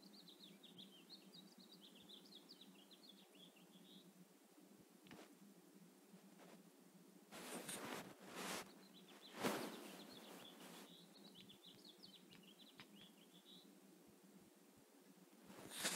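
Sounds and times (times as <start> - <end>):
small birds chirping: 0.0 - 4.2, 7.4 - 13.9, 15.0 - 15.9
noisy rustles: 5.0 - 13.1, 15.2 - 15.9.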